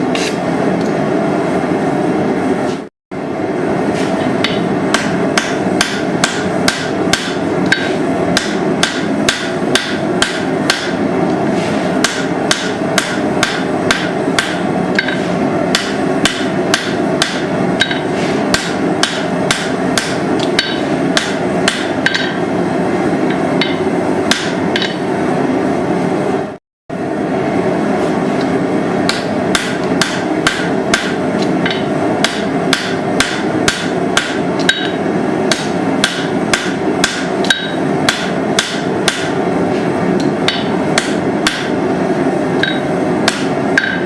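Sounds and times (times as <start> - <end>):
hammer striking steel on anvil: 4.3 - 11.0, 12.0 - 22.5, 23.3 - 25.1, 29.0 - 39.4, 40.2 - 41.8, 42.6 - 44.0.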